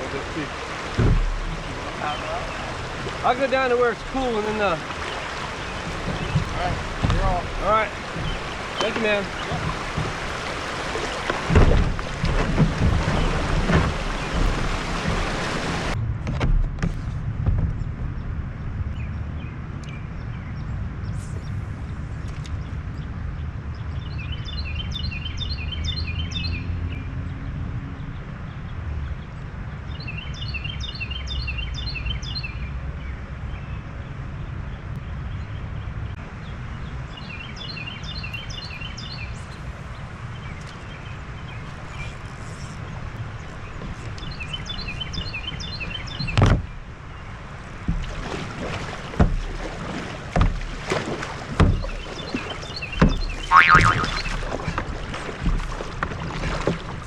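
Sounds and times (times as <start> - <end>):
river rushing: 0.0 - 16.0, 38.2 - 57.0
sharp knocks: 0.9 - 1.7, 5.9 - 10.3, 11.3 - 15.4
songbird trilling: 51.8 - 54.5.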